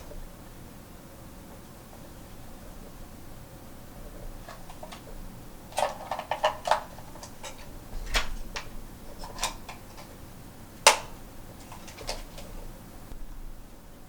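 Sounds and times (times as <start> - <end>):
plastic parts clicking: 4.4 - 5.1, 5.7 - 10.2, 10.8 - 12.6.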